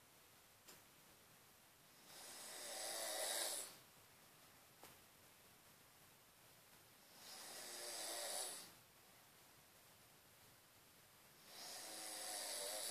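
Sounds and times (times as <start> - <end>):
quiet breathing: 1.8 - 3.9, 7.0 - 9.2, 11.3 - 12.9
woman snoring: 2.0 - 3.8, 7.1 - 8.8, 11.4 - 12.9.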